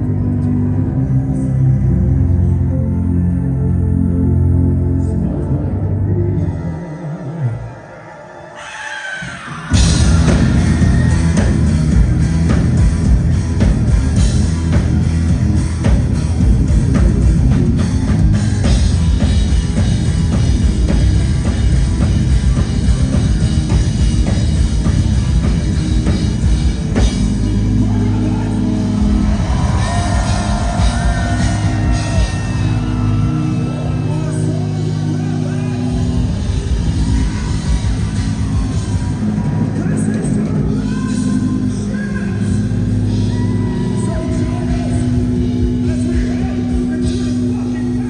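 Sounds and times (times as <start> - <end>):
distorted electric guitars: 0.0 - 48.0
drum kit: 9.7 - 48.0.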